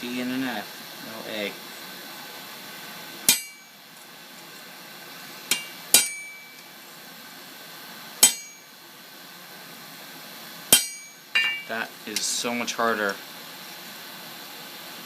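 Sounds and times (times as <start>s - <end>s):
steady hiss: 0.0s - 15.0s
hammer striking metal stamp: 8.2s - 8.6s.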